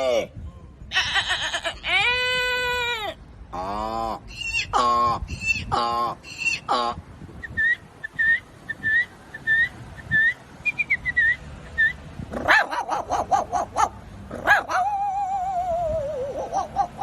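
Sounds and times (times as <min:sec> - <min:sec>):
person imitating dog yaps: 0:12.4 - 0:17.0.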